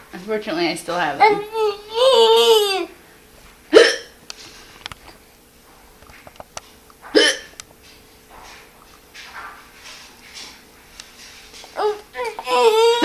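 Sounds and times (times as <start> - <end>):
woman hiccuping: 3.7 - 4.2, 7.2 - 7.5.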